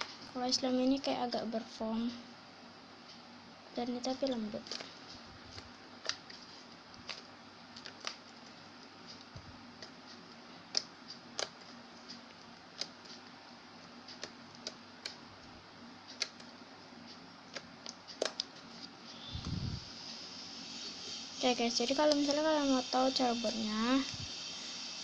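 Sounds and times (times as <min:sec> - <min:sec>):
slime clicking and popping: 0:10.7 - 0:11.7.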